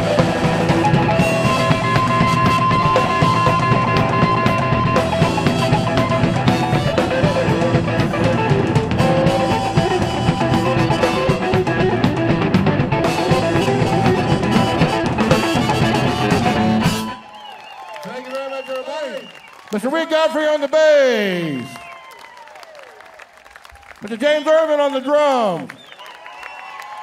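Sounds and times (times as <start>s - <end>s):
blues band playing instrumental: 0.0s - 17.3s.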